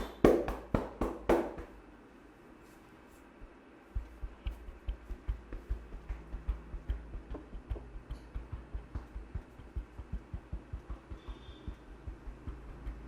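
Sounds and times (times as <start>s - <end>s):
muffled hand thumps: 0.0s - 1.8s, 4.0s - 13.0s.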